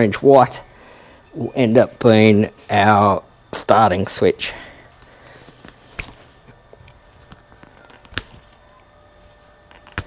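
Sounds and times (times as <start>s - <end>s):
hands handling wiring and tools: 5.0s - 10.0s.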